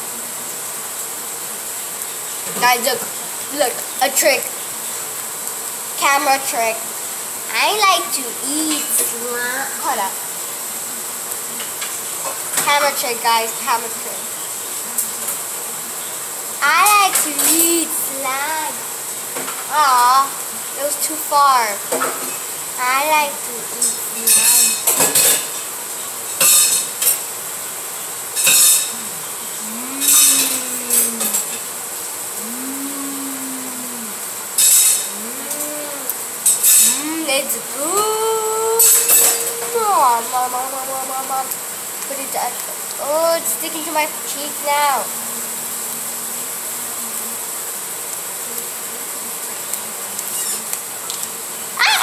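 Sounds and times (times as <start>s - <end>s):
background hiss: 0.0s - 52.0s
girl humming: 28.9s - 31.5s, 32.4s - 34.3s, 35.1s - 36.2s, 36.9s - 41.3s.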